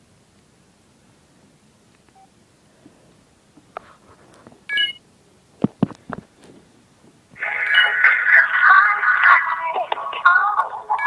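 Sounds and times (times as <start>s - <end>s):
phone electronic beep: 4.7s - 5.0s, 7.5s - 8.0s.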